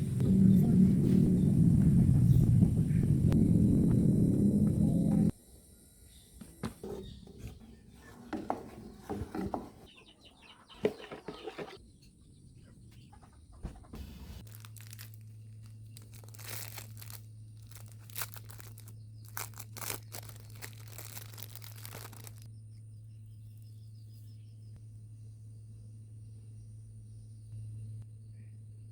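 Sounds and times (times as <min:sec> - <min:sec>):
steady low hum: 0:00.0 - 0:06.8, 0:22.3 - 0:28.9
rustling and crinkling: 0:13.7 - 0:22.5.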